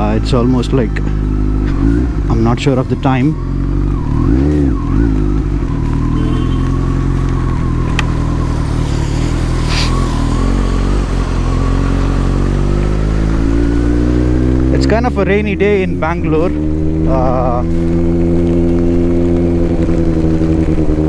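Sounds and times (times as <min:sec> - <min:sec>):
motorcycle engine cruising: 0:00.0 - 0:21.0.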